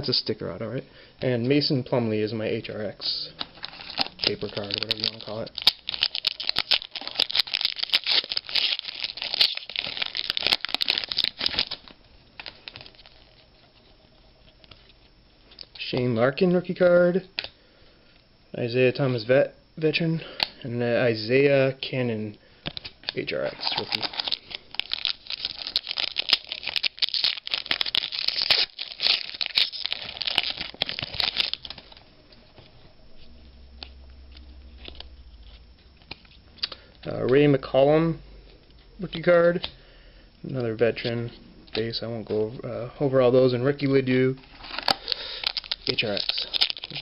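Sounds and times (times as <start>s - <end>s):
plastic wrapper crinkling and tearing: 3.4s - 15.8s, 22.7s - 36.8s, 44.5s - 47.0s.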